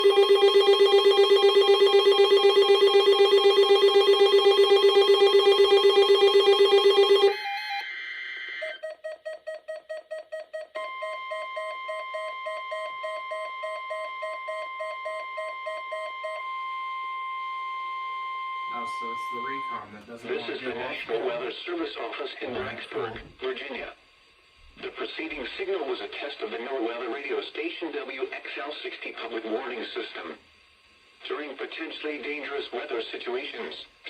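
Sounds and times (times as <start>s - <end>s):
loud rapid pulsing beep: 0.0s - 7.4s
steady high tone: 18.6s - 21.2s
quieter fast beeping: 18.7s - 21.0s.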